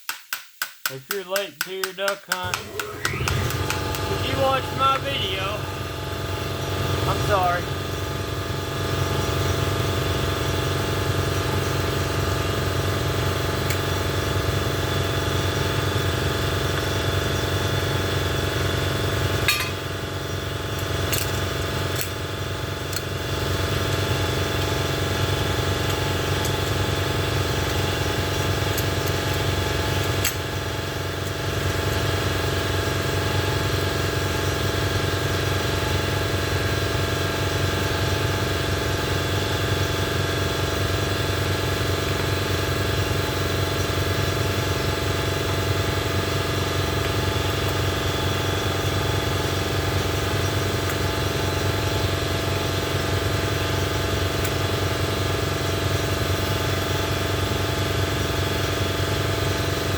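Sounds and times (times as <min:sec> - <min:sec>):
engine idling: 0:02.4 - 0:59.9.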